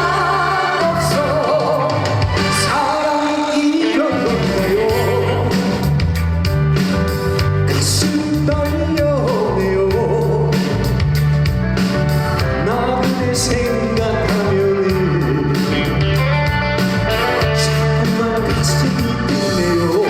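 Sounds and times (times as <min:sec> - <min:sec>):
trot song with singing: 0:00.0 - 0:06.2.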